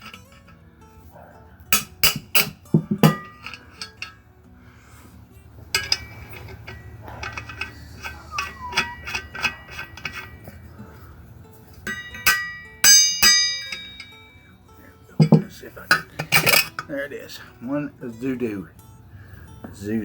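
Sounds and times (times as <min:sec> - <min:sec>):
metal tools clinking and knocking: 0:00.0 - 0:00.6, 0:01.7 - 0:04.2, 0:05.6 - 0:14.5, 0:15.2 - 0:17.1
loud ringing metal strikes: 0:11.8 - 0:14.4.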